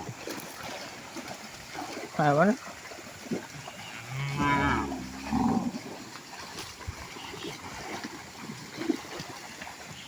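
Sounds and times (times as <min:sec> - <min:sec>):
cattle mooing: 0:03.9 - 0:05.8.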